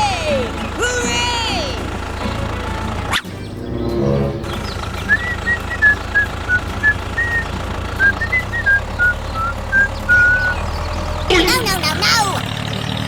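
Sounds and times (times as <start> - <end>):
steady low rumble: 0.0 - 8.0
simple high-pitched tune: 2.4 - 5.8.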